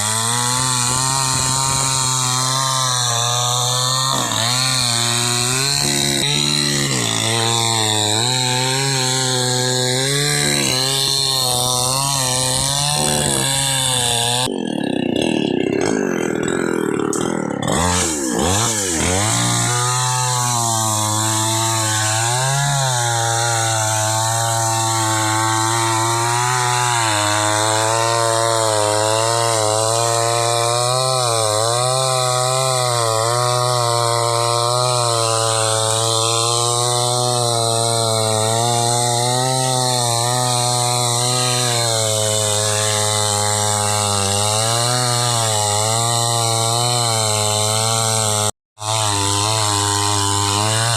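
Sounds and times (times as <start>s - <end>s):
chainsaw cutting wood: 0.0s - 50.9s.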